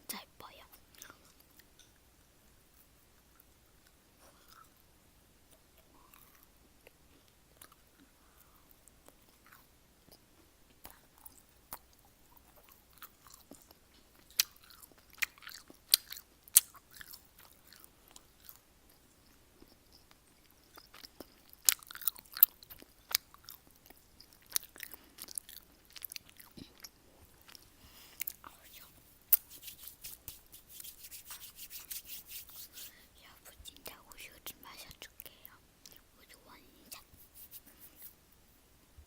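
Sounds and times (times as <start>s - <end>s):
person chewing food: 5.5s - 10.2s, 10.9s - 33.2s.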